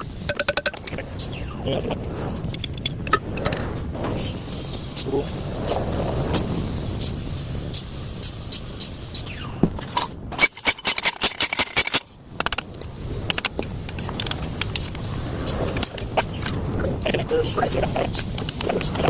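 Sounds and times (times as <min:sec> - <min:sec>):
metal tools clicking and scraping: 0:00.3 - 0:01.4, 0:07.0 - 0:16.6.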